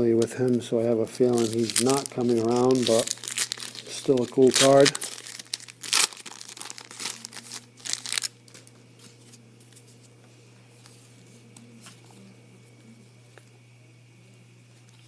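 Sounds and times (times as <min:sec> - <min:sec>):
foil wrapper tearing and crinkling: 0:01.2 - 0:08.7.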